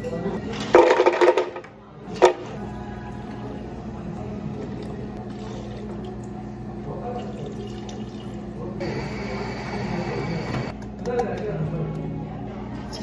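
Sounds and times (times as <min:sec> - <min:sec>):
machine humming: 0:02.4 - 0:10.8.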